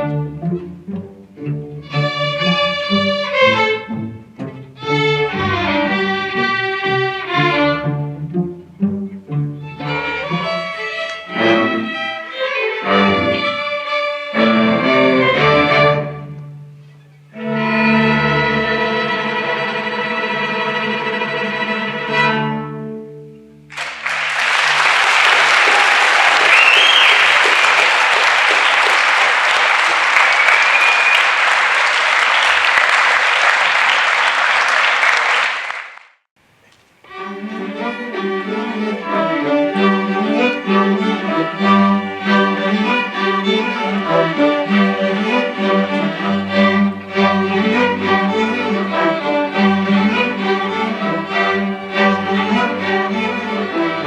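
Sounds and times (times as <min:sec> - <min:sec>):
string orchestra playing: 0:00.0 - 0:27.0, 0:37.0 - 0:54.0
audience applauding: 0:23.7 - 0:36.2
whistles from audience: 0:25.8 - 0:27.8, 0:29.8 - 0:32.7.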